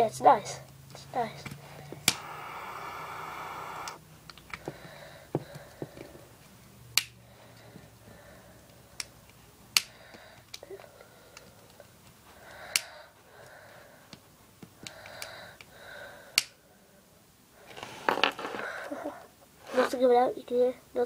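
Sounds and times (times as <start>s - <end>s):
gas jet hissing: 2.0s - 4.0s
torch lighter ignition clicks: 2.0s - 4.0s.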